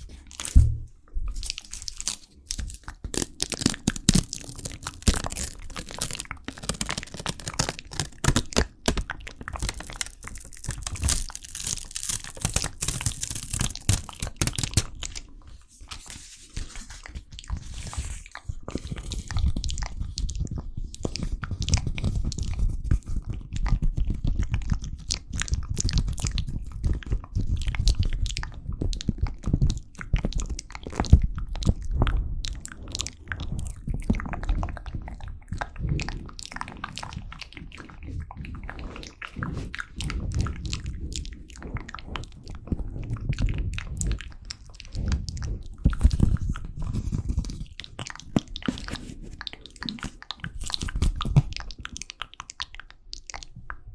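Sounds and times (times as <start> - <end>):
close crunching and crackling: 0.0 - 23.0, 32.6 - 53.8.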